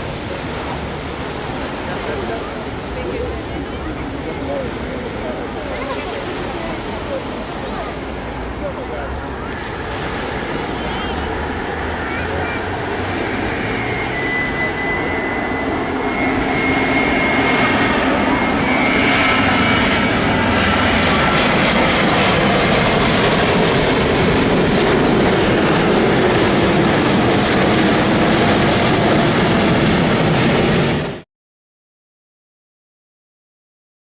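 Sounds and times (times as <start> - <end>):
jet engines rumbling overhead: 0.0 - 31.2
faint high whine: 0.1 - 26.8.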